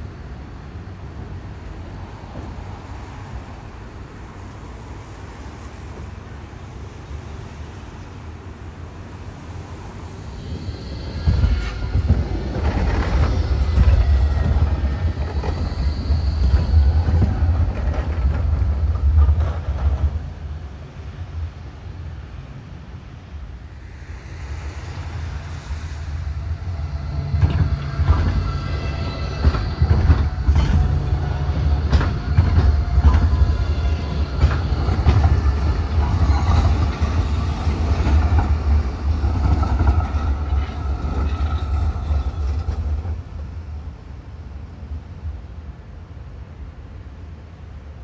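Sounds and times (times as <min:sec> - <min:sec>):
train passing rumble: 0:00.0 - 0:48.0
train wheels clacking: 0:10.5 - 0:20.3, 0:25.9 - 0:43.2
whining tones: 0:23.5 - 0:40.1.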